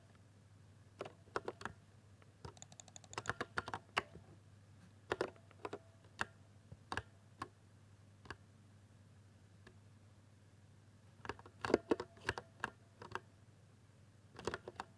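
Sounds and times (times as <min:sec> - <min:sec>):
keyboard keys clicking: 0:02.5 - 0:03.8.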